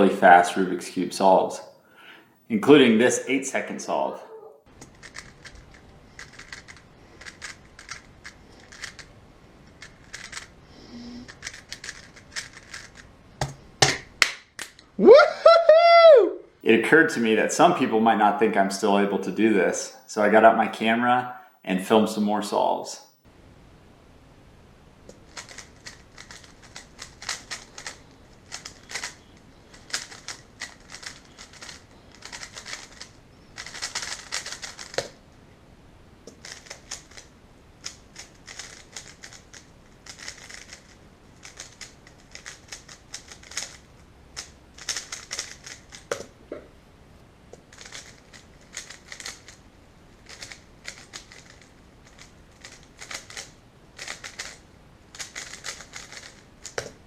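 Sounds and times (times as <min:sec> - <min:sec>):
puzzle cube clicking: 0:04.8 - 0:09.1, 0:09.7 - 0:10.5, 0:11.3 - 0:14.8, 0:25.1 - 0:35.2, 0:36.3 - 0:46.3, 0:47.6 - 0:49.6, 0:50.2 - 0:57.0.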